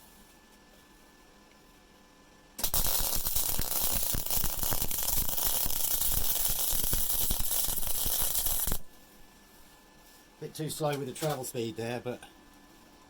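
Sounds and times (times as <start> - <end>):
welding arc crackling: 2.6 - 9.0.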